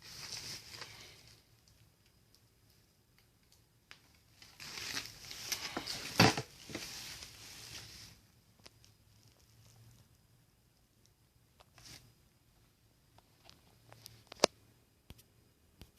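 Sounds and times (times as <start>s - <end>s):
packaging rustling and crinkling: 0.0s - 1.8s, 3.9s - 9.8s.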